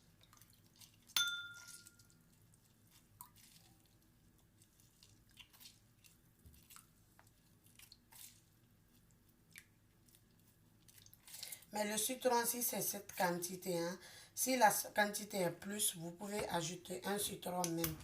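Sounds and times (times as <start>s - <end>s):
lemon squishing and dripping: 0.0s - 11.7s.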